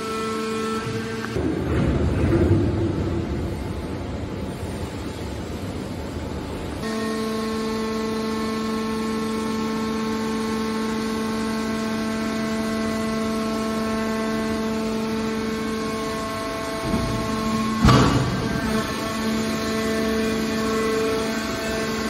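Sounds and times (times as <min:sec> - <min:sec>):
hydraulic power unit humming: 0:00.0 - 0:22.0.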